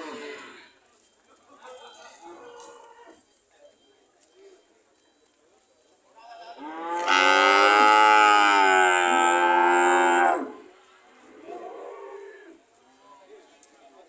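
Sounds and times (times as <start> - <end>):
cow mooing: 6.6 - 10.6.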